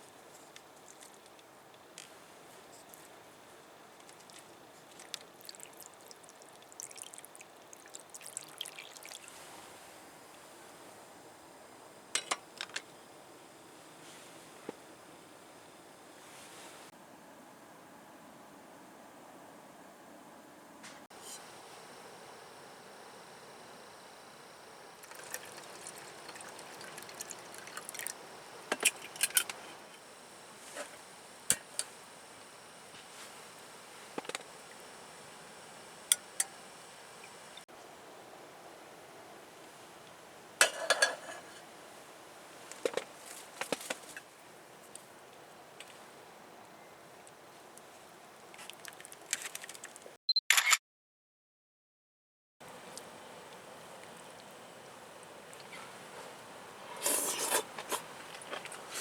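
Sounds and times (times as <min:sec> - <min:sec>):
background hiss: 0:00.0 - 0:50.2, 0:52.6 - 0:59.0
liquid pouring into a vessel: 0:05.0 - 0:09.4, 0:25.0 - 0:28.2.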